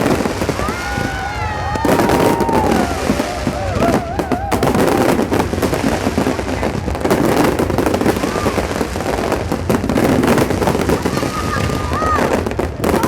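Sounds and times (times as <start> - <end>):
crowd voices: 0.0 - 13.0
fireworks bangs and crackles: 0.0 - 13.0.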